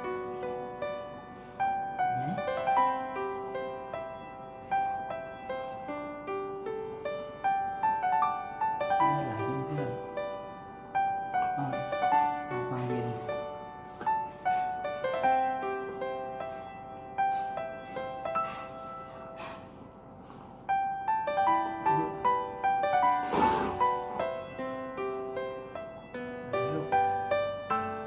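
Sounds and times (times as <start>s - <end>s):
gentle piano music: 0.0s - 28.0s.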